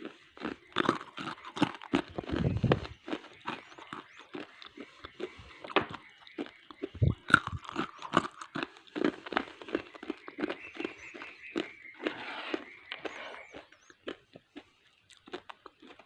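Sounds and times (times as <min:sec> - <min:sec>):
chewing hard clay crunches: 0:00.0 - 0:16.0.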